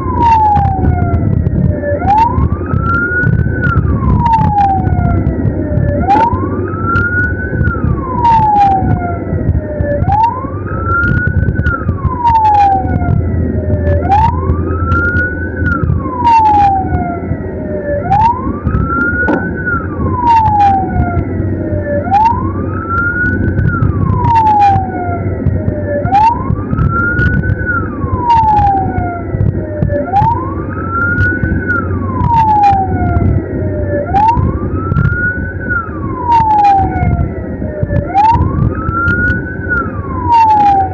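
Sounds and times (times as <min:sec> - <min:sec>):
ambulance siren wailing: 0:00.0 - 0:40.9
engine and road rumble: 0:00.0 - 0:40.9.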